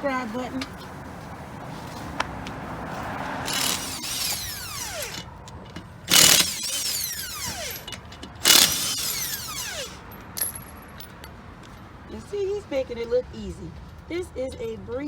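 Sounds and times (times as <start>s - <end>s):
tool spinning down whine: 3.4s - 5.3s, 6.1s - 10.0s
impact wrench bursts: 3.4s - 10.7s.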